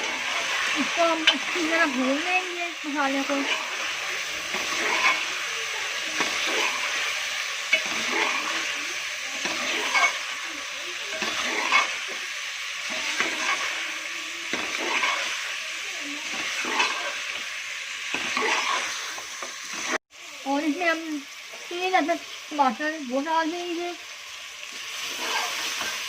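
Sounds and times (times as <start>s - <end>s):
chicken sizzling in oil: 0.0s - 26.0s
spoon scraping and knocking pan: 3.2s - 5.4s, 6.0s - 10.4s, 11.1s - 13.9s, 14.5s - 15.5s, 16.2s - 20.0s, 24.7s - 26.0s.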